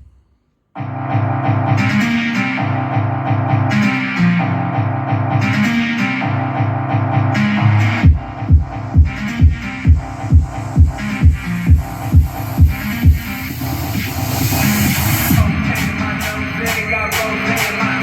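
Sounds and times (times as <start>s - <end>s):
guitar and bass music: 0.8s - 18.0s
heavy drum beats: 7.1s - 18.0s.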